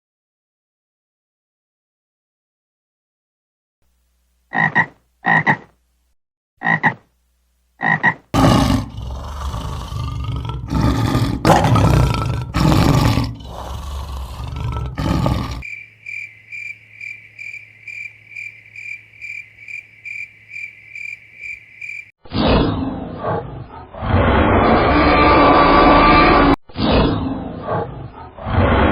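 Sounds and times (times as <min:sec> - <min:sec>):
large animal roaring: 0:08.4 - 0:15.6, 0:22.8 - 0:26.6
insect-like high chirping: 0:15.6 - 0:22.1.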